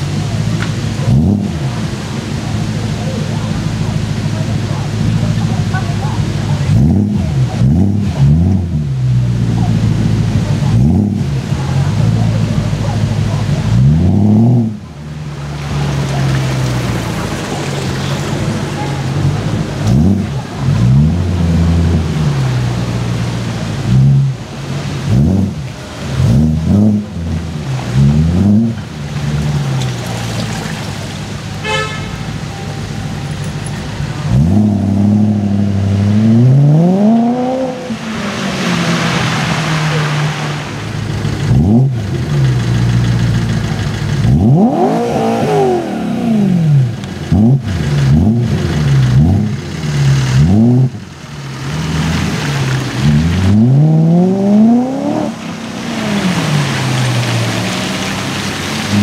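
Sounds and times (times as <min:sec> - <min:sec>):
car engine revving: 0:00.0 - 0:59.0
car horn toot: 0:31.6 - 0:33.4.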